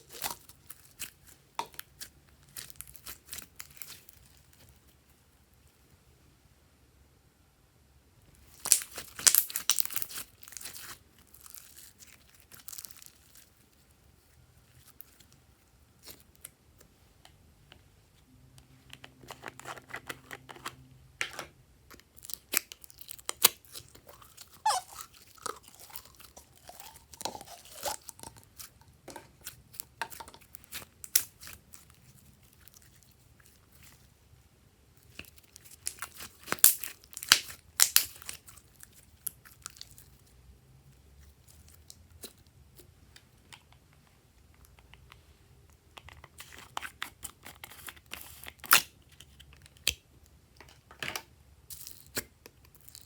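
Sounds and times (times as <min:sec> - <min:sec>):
slime squished by hand: 0:00.0 - 0:04.9, 0:08.4 - 0:13.9, 0:35.0 - 0:40.2.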